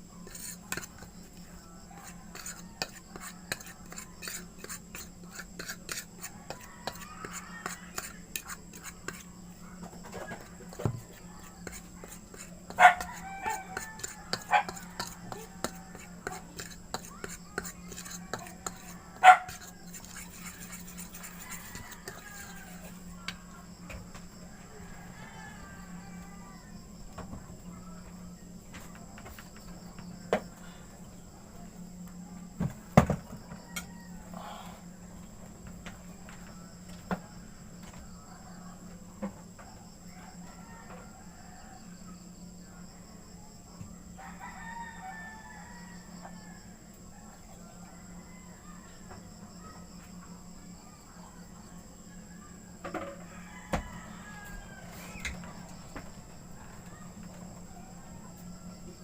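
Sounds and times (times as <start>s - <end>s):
crickets chirping: 0.0s - 59.0s.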